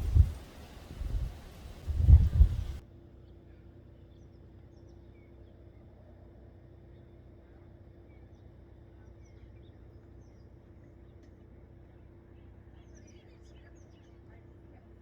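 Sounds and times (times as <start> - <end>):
low rumble: 0.0 - 2.8
small birds chirping: 0.0 - 2.8
steady hum: 0.0 - 2.8.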